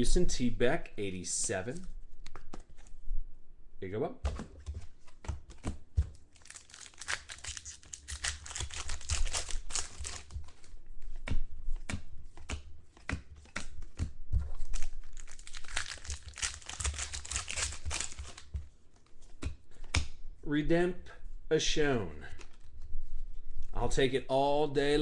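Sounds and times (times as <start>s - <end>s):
wrapper tearing and crinkling: 6.3s - 10.6s, 14.6s - 18.5s.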